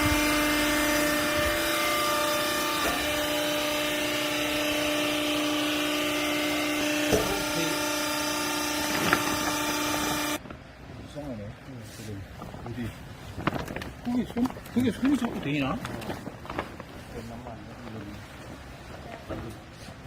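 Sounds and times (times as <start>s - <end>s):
hydraulic motor hum: 0.0s - 10.4s.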